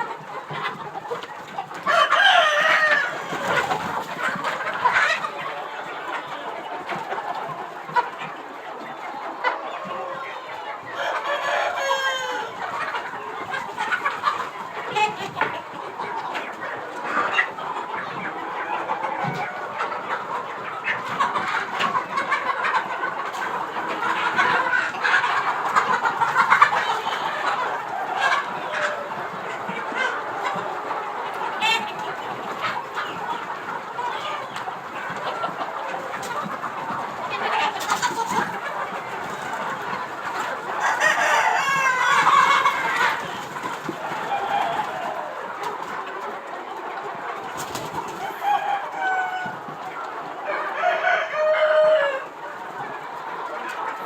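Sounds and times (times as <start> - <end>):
chickens clucking: 0.0 - 54.0
rooster crowing: 50.7 - 52.2.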